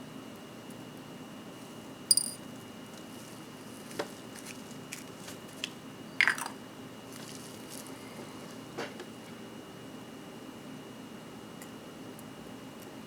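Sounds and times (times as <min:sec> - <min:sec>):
small metal tool clicks and taps: 0:02.1 - 0:02.4.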